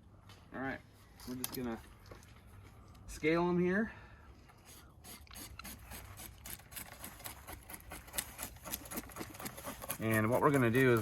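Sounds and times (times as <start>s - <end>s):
knife scraping fish scales: 5.1s - 11.0s.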